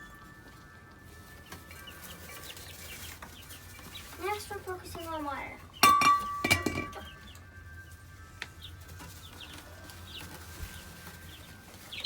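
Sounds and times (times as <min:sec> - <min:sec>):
chicks peeping: 0:00.0 - 0:12.0
sharp clink: 0:05.8 - 0:07.1.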